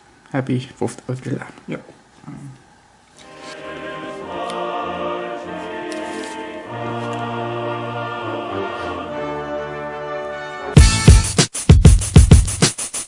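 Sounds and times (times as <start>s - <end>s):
music with slow held chords: 3.2s - 11.4s.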